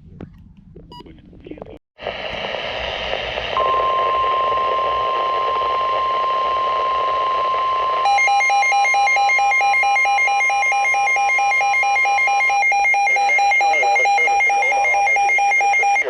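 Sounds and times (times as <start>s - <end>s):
steady warning alarm tone: 3.6s - 16.0s
rapid electronic beeping: 8.1s - 16.0s.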